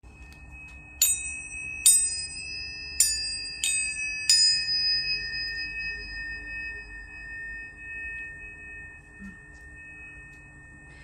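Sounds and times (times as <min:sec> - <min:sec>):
tuning forks ringing: 0:00.0 - 0:11.0
tuning fork strike taps: 0:00.1 - 0:01.3, 0:05.2 - 0:11.0.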